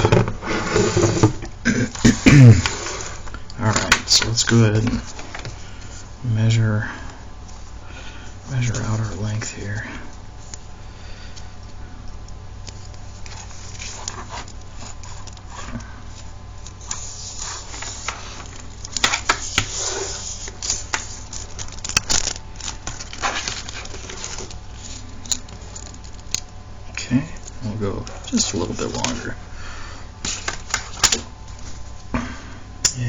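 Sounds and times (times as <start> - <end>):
steady low hum: 0.0 - 33.0
ribbon cable rustling: 12.6 - 26.5.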